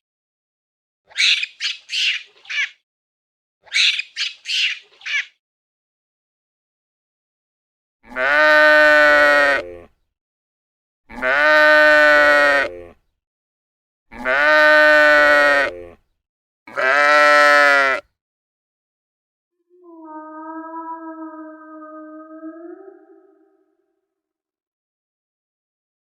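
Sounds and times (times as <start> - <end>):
sheep bleating: 8.0 - 9.9, 11.1 - 13.0, 14.1 - 16.0, 16.7 - 18.1.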